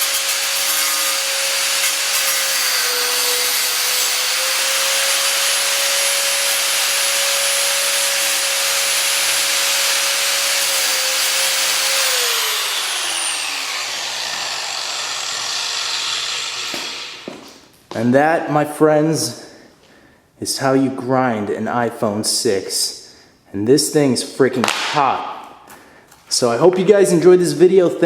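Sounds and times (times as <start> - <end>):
angle grinder whining: 0.0 - 17.6.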